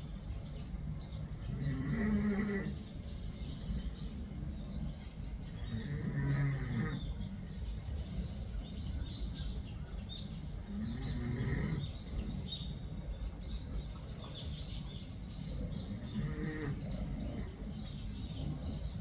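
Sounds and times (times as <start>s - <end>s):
birds chirping faintly: 0.0s - 19.0s
low background noise: 0.0s - 19.0s
cat snoring: 1.5s - 2.8s, 5.7s - 7.1s, 10.7s - 11.9s, 15.8s - 17.6s.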